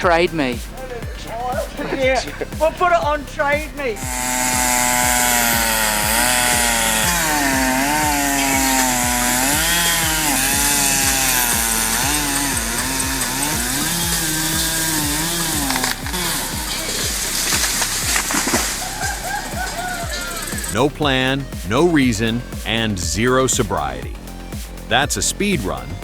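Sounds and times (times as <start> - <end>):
low thumps: 1.6 - 23.2
chainsaw cutting at high revs: 4.0 - 20.8.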